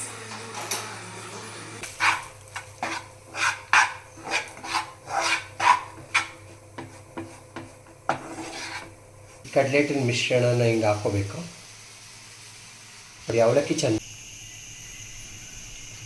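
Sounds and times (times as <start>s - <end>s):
utensil scraping in a pan: 1.8s - 10.0s.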